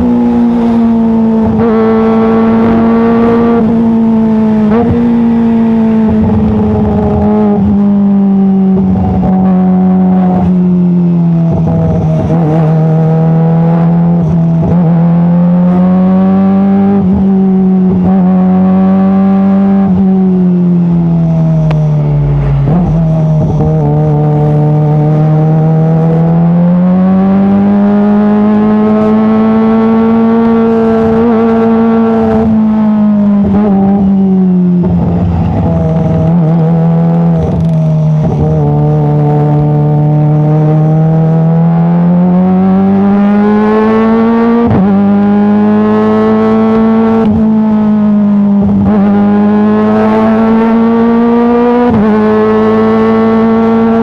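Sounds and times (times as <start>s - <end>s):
motorcycle engine running: 0.0s - 26.3s.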